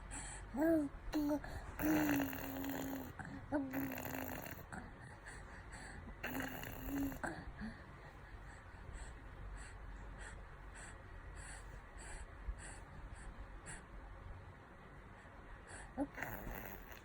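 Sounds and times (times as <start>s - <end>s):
baby vocalising: 0.6s - 4.6s, 6.2s - 7.5s, 16.0s - 17.0s.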